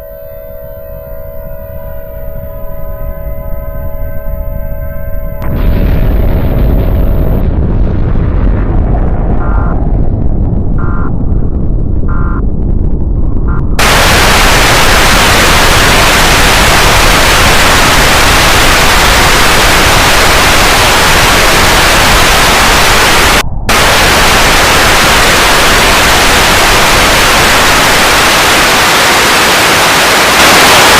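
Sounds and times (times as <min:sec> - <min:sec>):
loud static hiss: 0:13.8 - 0:30.9.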